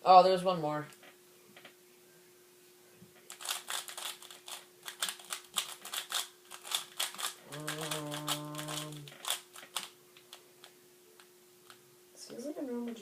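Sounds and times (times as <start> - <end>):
puzzle cube clicking turns: 3.3 - 10.3
man humming: 7.4 - 9.1.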